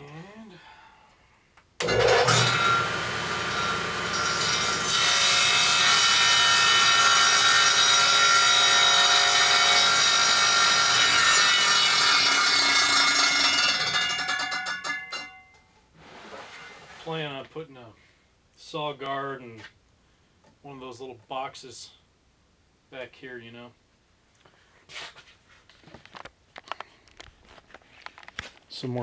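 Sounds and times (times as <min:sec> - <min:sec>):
table saw cutting board: 0:01.8 - 0:15.0.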